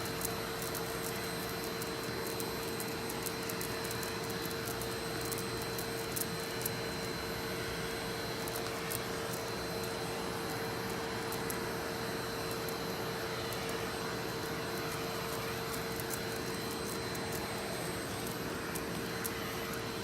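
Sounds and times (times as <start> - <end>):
faint ticks: 0.1 - 6.8
vacuum cleaner running: 6.5 - 20.0.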